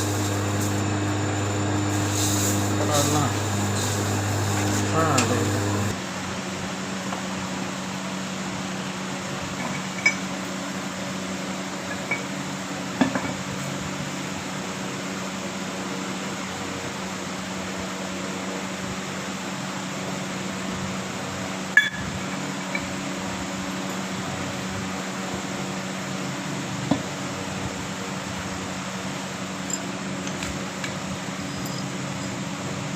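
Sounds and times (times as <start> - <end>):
electric motor hum: 0.0 - 6.0
metallic clinks of tools: 29.7 - 29.9, 31.4 - 32.4.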